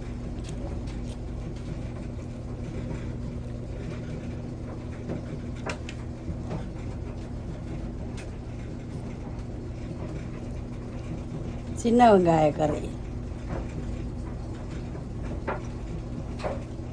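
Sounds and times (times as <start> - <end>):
steady mechanical hum: 0.0 - 16.9.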